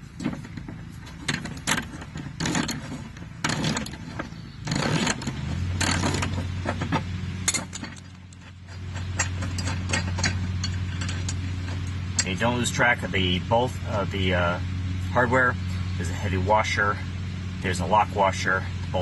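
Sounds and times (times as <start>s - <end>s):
steady low hum: 0.0s - 19.0s
wrench and metal hardware clinking: 0.2s - 12.8s.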